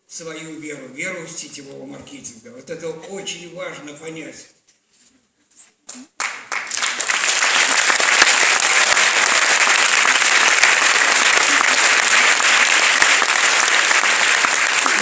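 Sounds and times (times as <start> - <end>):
audience applauding: 6.2 - 15.0.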